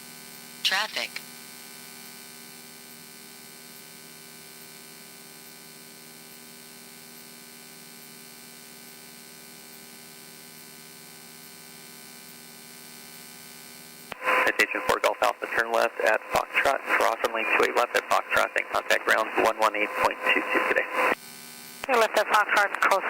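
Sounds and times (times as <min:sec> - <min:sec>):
aircraft engine drone: 0:14.2 - 0:21.2.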